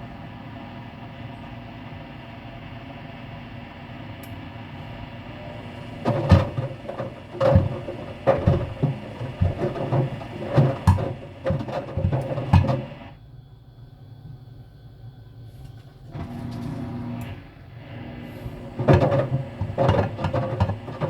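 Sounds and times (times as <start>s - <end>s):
washer-dryer low hum: 0.0s - 21.0s
parts knocking in drum: 6.0s - 13.0s, 18.8s - 21.0s.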